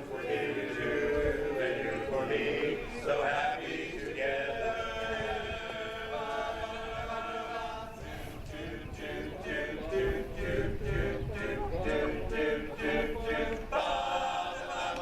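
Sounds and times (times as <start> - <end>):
male chorus singing a cappella: 0.0 - 15.0.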